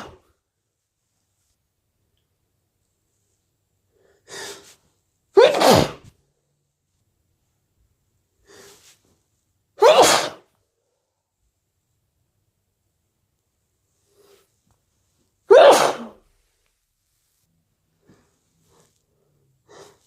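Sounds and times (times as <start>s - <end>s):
person sneezing loudly: 0.0s - 0.3s, 4.3s - 6.2s, 9.8s - 10.6s, 15.5s - 16.3s.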